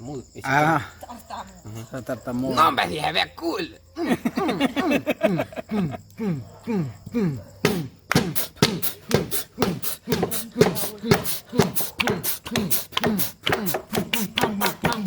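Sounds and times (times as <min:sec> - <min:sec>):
person beatboxing: 0:07.1 - 0:15.0.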